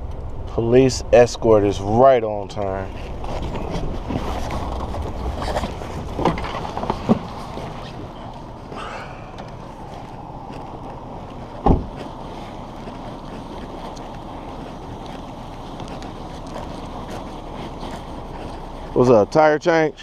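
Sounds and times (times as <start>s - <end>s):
wind buffeting microphone: 0.0s - 19.6s
vehicle and road rumble: 0.0s - 20.0s.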